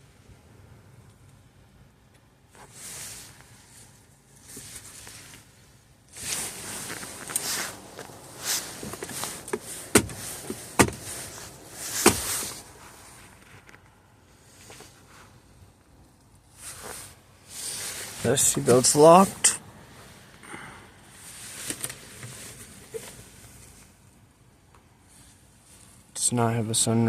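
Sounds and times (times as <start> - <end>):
rustling and handling noises: 2.5 - 15.5, 16.1 - 19.5
sharp clicks and knocks: 8.8 - 11.0.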